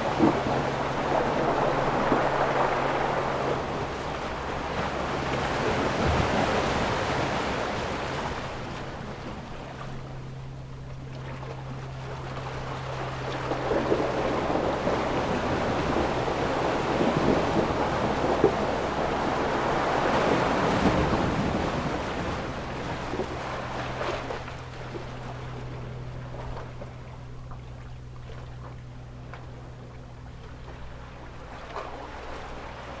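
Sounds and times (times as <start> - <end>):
ocean waves washing in: 0.0 - 10.3, 11.7 - 26.4.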